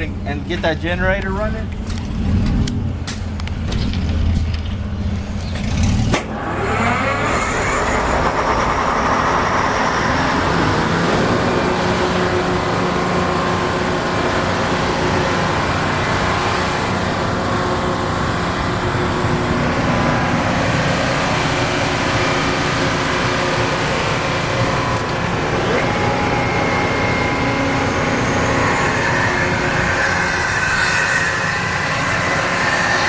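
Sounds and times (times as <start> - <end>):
generator engine droning: 0.0 - 33.0.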